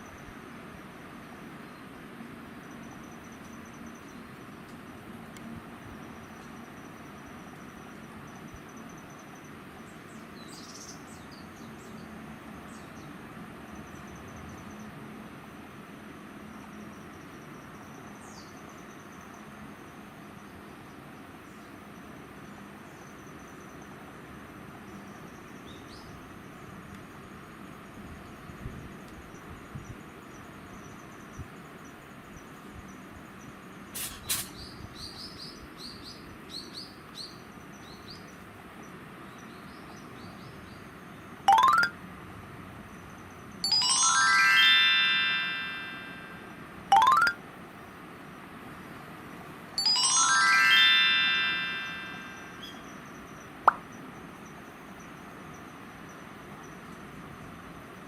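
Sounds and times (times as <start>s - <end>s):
steady background hiss: 0.0s - 58.0s
small bird chirping: 8.3s - 12.1s, 51.3s - 57.0s
insect high pulsing trill: 42.9s - 47.3s, 49.8s - 56.8s.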